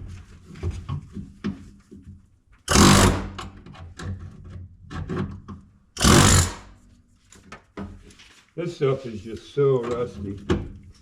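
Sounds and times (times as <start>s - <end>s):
air chisel hammering sheet metal: 2.7s - 3.4s, 6.0s - 6.7s
metal knocks and scrapes: 6.0s - 6.8s.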